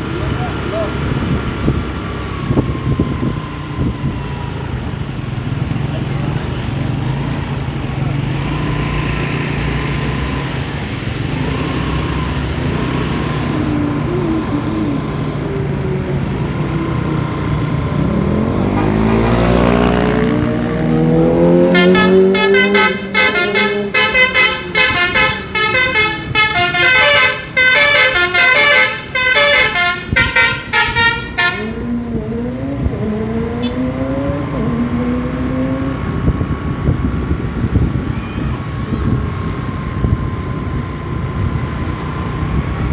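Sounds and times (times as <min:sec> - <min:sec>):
bus engine: 0:00.0 - 0:42.9
multi-tone bus horn melody: 0:18.6 - 0:20.3, 0:21.3 - 0:32.1, 0:33.5 - 0:34.0.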